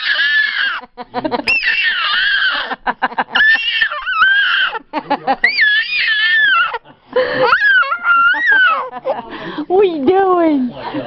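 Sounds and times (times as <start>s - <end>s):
baby squealing: 0.0s - 0.8s, 1.5s - 4.8s, 5.4s - 6.8s, 7.4s - 8.9s.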